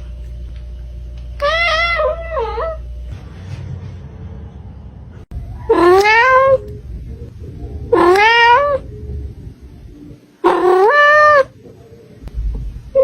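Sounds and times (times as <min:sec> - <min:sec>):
kitten meowing: 0:05.7 - 0:06.6, 0:07.9 - 0:08.8, 0:10.4 - 0:11.5.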